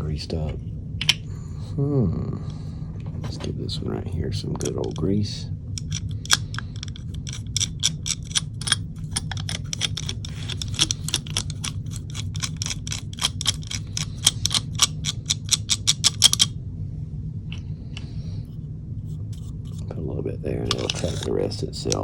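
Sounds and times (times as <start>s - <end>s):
steady low hum: 0.0s - 22.0s
small gearbox clicks: 5.8s - 16.5s.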